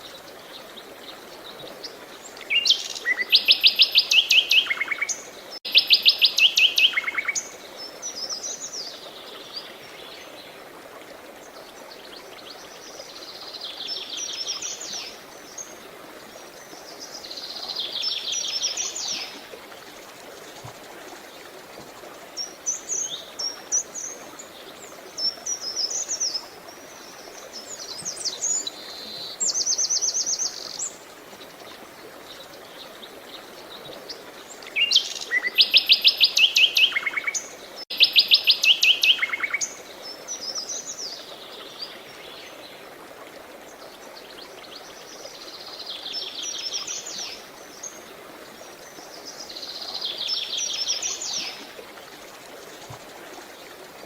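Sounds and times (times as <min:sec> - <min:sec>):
flowing water: 0:00.0 - 0:54.0.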